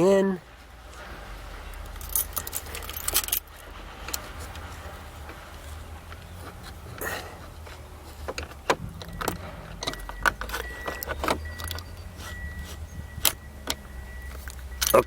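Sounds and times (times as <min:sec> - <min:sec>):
keys jangling: 0:01.7 - 0:03.5
faint high steady tone: 0:09.0 - 0:15.0.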